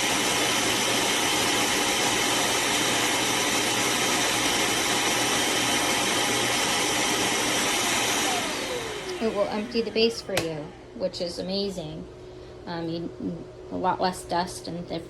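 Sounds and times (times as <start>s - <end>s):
vacuum suction motor whooshing: 0.0s - 11.3s.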